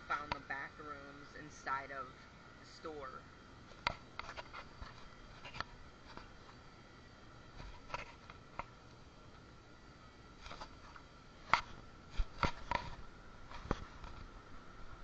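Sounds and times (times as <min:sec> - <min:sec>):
thin high hum: 0:00.0 - 0:15.0.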